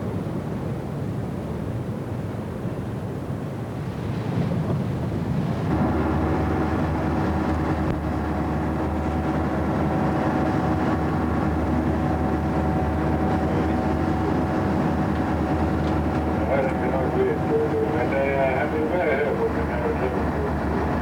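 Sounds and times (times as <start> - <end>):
engine droning: 5.5 - 21.0.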